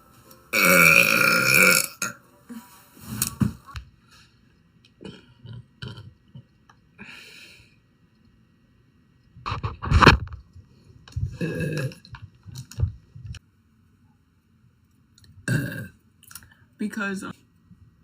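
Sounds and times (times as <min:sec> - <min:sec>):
girl burping: 0:00.6 - 0:02.2, 0:15.5 - 0:15.9.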